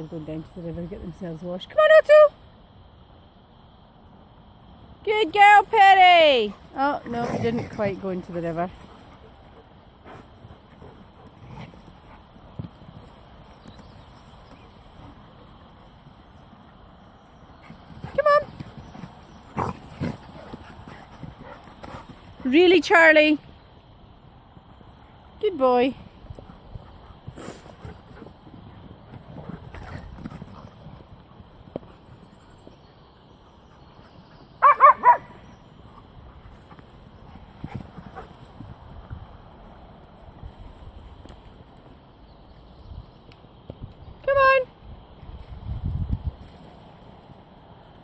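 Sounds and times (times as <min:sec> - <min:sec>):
dog barking: 0:34.6 - 0:35.3.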